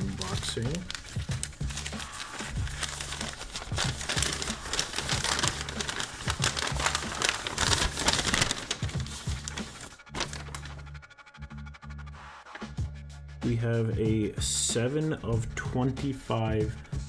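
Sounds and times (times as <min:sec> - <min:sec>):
plastic packaging crinkling: 0:00.0 - 0:10.8
background music: 0:00.0 - 0:17.0.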